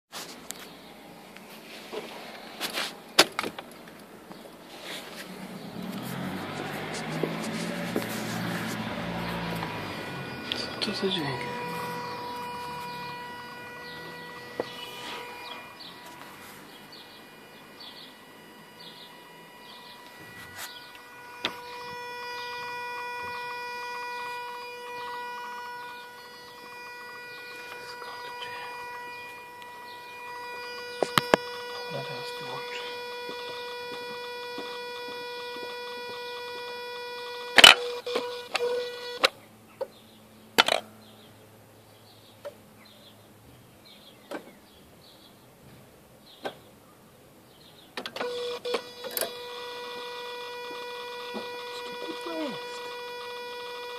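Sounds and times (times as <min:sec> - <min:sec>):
high-pitched electrical whine: 0:00.2 - 0:39.4, 0:48.0 - 0:53.9
electric buzzing hum: 0:00.4 - 0:39.4, 0:48.1 - 0:53.9.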